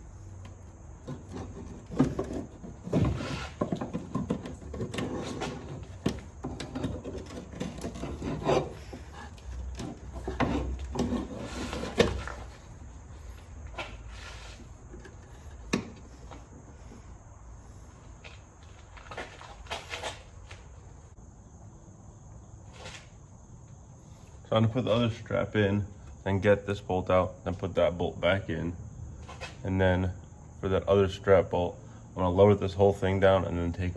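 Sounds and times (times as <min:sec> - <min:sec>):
tools and parts clanking: 0:00.4 - 0:12.6.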